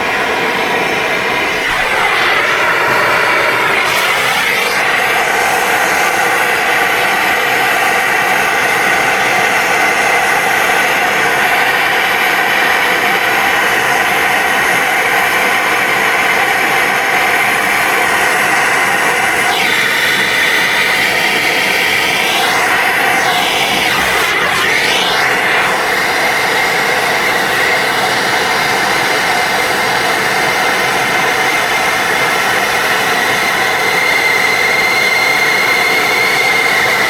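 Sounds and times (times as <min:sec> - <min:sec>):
gas torch hissing: 0:00.5 - 0:12.5, 0:14.0 - 0:27.9.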